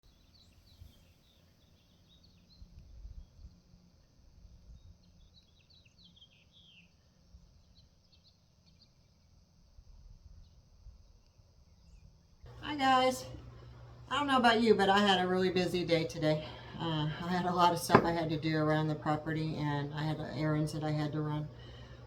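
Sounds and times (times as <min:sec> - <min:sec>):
faint birds chirping: 0:04.7 - 0:09.4, 0:10.4 - 0:22.0.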